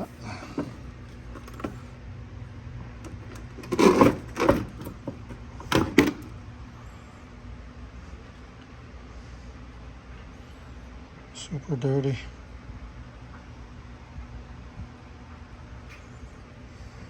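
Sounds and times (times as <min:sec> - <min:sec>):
hard plastic clattering and scraping: 0:00.0 - 0:01.9, 0:03.0 - 0:06.3.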